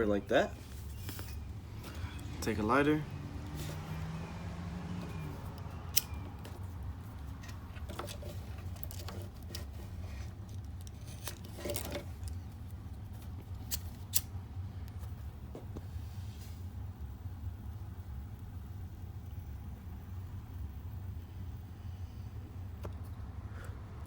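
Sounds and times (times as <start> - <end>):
steady low hum: 0.0 - 24.0
lighter clicking: 5.6 - 6.3, 13.6 - 14.4.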